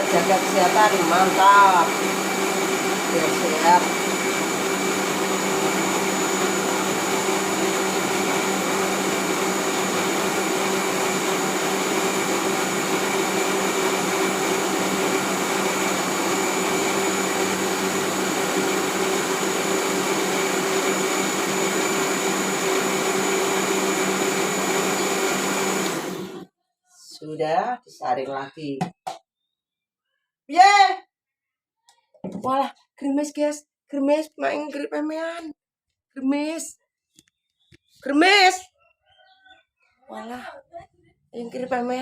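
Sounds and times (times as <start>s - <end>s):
blender motor whine: 0.0s - 26.5s
blender switching off: 0.0s - 26.5s.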